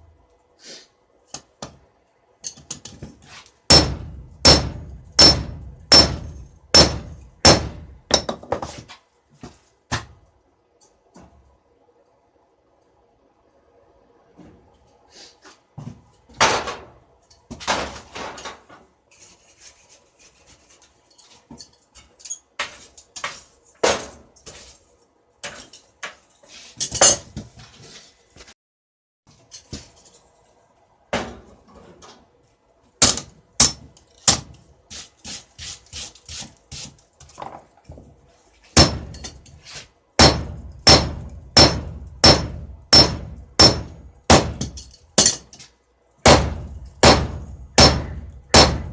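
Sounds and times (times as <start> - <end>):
hammer striking metal: 3.7 - 8.4, 38.8 - 39.4, 40.2 - 45.5, 46.2 - 48.9.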